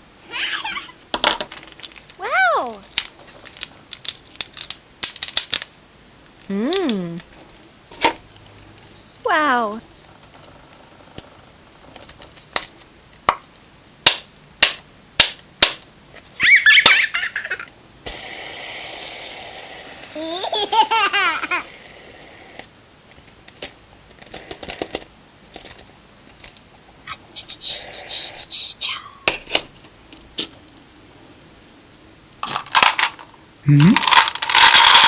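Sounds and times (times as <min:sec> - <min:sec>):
high warbling laughter: 0:00.3 - 0:01.0, 0:16.4 - 0:17.7
steady hiss: 0:16.9 - 0:22.7, 0:27.2 - 0:29.6.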